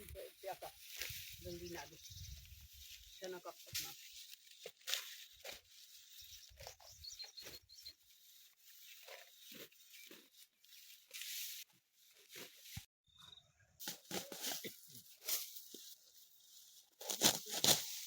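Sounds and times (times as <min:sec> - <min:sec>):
sickle cutting dry wheat: 0:00.0 - 0:12.9, 0:13.8 - 0:18.0
bird chirping: 0:01.1 - 0:10.8, 0:13.0 - 0:13.8.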